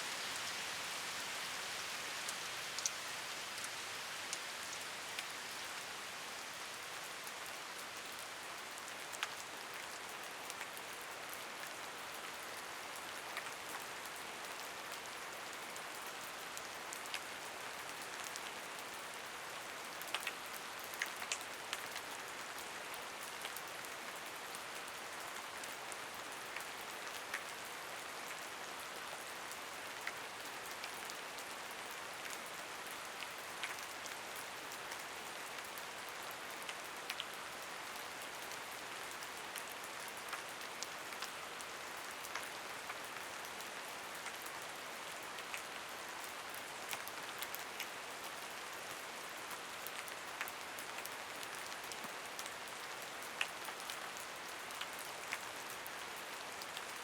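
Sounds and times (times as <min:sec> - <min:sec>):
steady rain hiss: 0:00.0 - 0:57.0.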